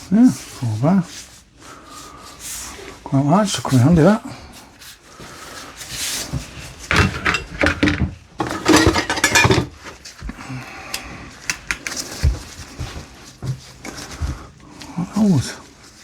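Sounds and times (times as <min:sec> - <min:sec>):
metal hand tools clinking: 0:08.6 - 0:09.7.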